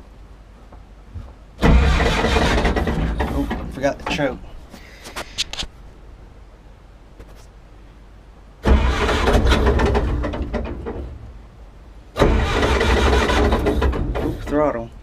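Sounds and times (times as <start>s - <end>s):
combine engine cranking: 1.6s - 4.4s, 8.6s - 11.2s, 12.2s - 14.7s.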